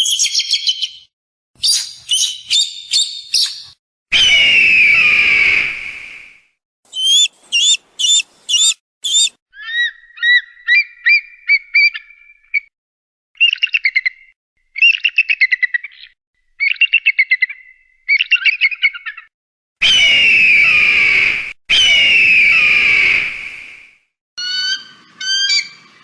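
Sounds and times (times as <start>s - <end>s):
eagle chittering trills: 6.9s - 10.8s
eagle calling: 6.9s - 12.2s.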